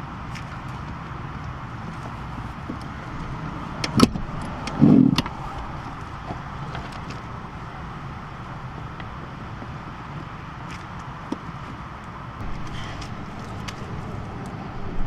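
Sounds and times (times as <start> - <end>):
steady background noise: 0.0 - 15.0.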